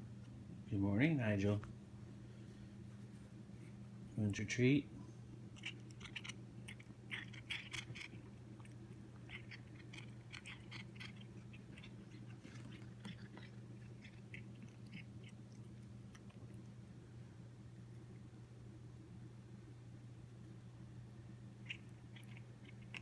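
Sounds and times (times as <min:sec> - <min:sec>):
steady low hum: 0:00.0 - 0:23.0
cat crunching treats: 0:05.3 - 0:16.8, 0:21.6 - 0:23.0.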